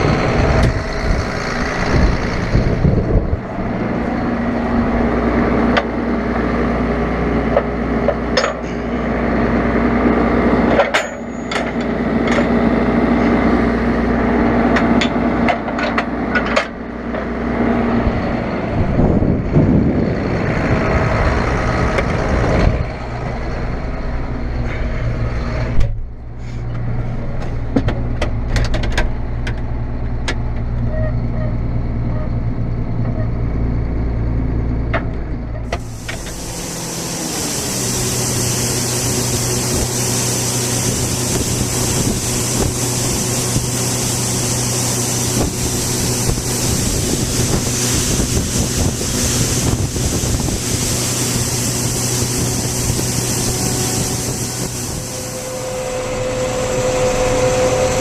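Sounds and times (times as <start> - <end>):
tractor engine running: 0.0 - 58.0.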